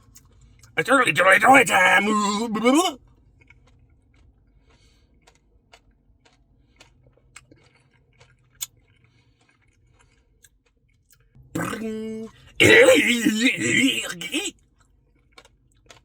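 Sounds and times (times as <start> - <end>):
soft chewing: 0.0 - 16.0
wet mouth clicks: 11.6 - 12.0.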